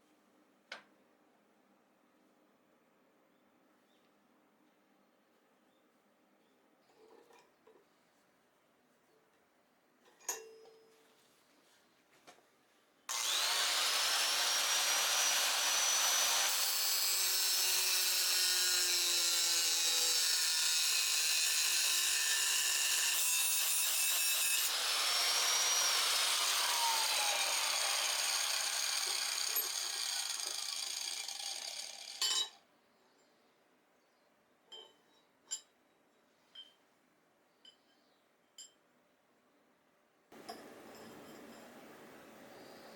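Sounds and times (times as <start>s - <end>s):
power tool grinding iron: 13.1s - 32.6s.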